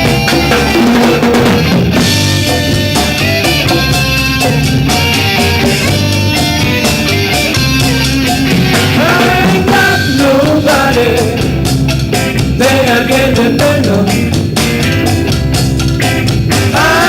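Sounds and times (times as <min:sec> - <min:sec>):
rock band playing: 0:00.0 - 0:17.0
gliding melody line: 0:02.4 - 0:11.3.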